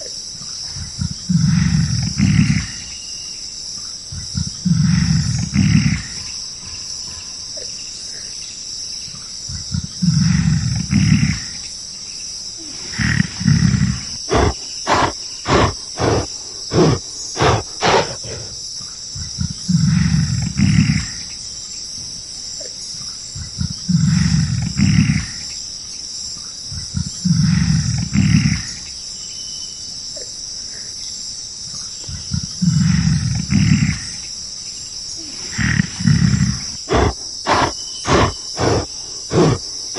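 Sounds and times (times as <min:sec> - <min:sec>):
high insect chorus: 0:00.0 - 0:39.9
deep loud animal calls: 0:12.6 - 0:18.6, 0:35.2 - 0:39.9.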